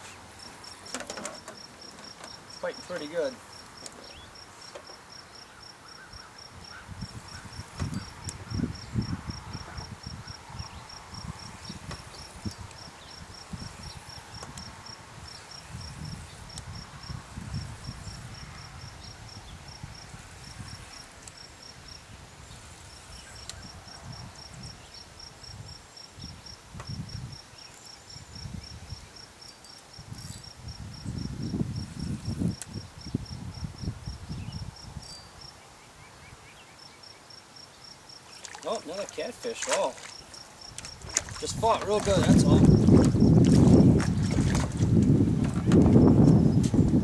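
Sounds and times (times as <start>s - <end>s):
insect chirping: 0.0s - 46.9s
wind rumbling on microphone: 6.0s - 29.2s, 29.9s - 36.5s, 40.4s - 47.0s.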